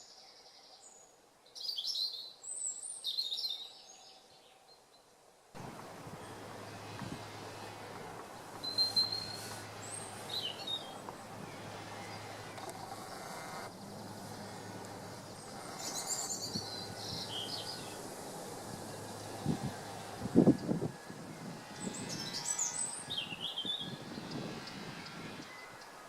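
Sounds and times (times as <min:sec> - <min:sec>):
outdoor background hiss: 0:00.0 - 0:26.0
songbirds chirping and singing: 0:06.1 - 0:26.0.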